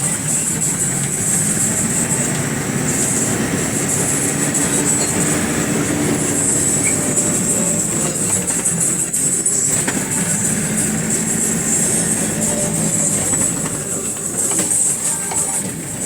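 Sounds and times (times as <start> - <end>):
minibus engine and road rumble: 0.0 - 16.0
rattling: 0.0 - 16.0.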